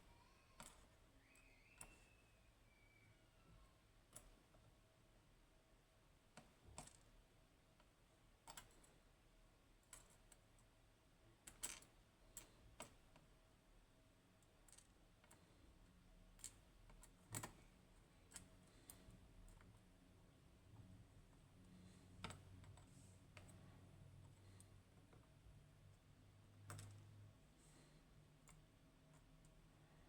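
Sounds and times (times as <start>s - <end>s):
light clicks of lock parts: 0.6s - 2.1s, 14.4s - 19.9s, 20.7s - 29.7s.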